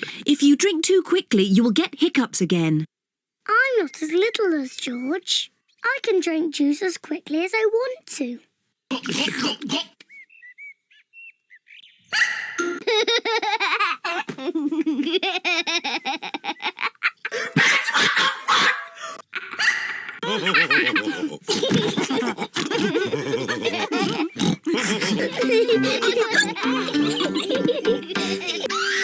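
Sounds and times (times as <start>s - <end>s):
cartoon characters laughing: 12.8s - 29.0s.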